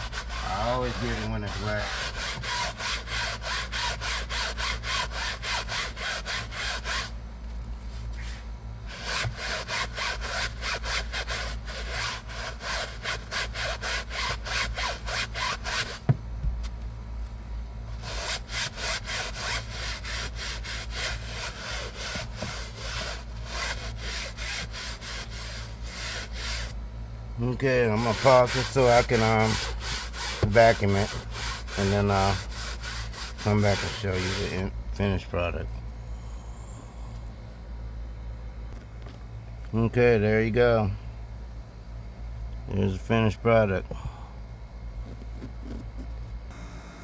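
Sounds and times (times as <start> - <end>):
scrub brush on wet fabric: 0.0 - 2.2.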